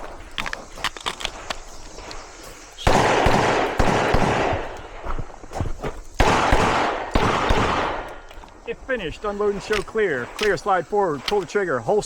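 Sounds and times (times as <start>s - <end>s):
pistol shots: 2.8s - 4.8s, 6.2s - 8.3s.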